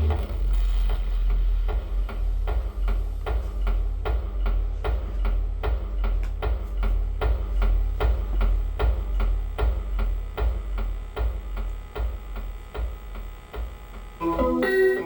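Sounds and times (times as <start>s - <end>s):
low hum: 0.0s - 11.4s.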